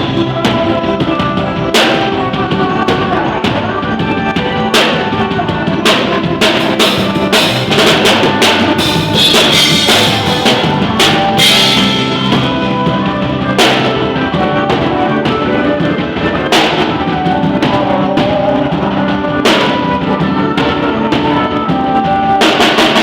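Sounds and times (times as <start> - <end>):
live band music: 0.0 - 23.0
cymbals ringing: 6.4 - 14.1.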